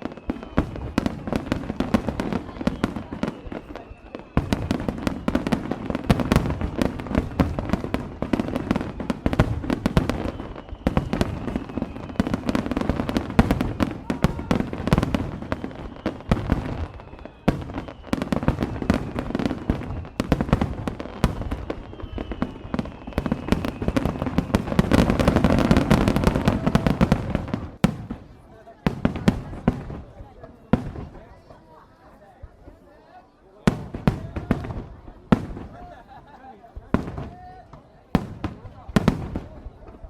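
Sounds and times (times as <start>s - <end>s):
faint falling whistles: 0.0s - 27.1s
fireworks crackling: 0.0s - 31.7s, 33.6s - 40.0s.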